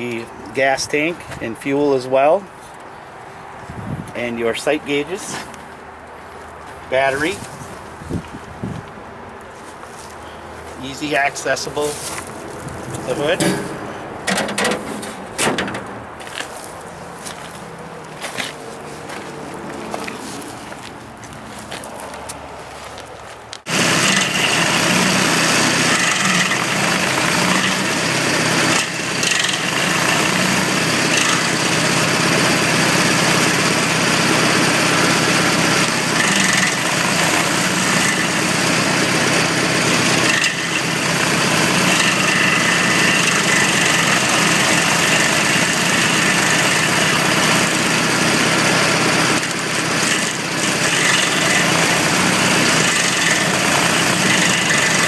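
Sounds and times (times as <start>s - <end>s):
stump grinder running: 11.1s - 15.2s, 23.7s - 55.0s.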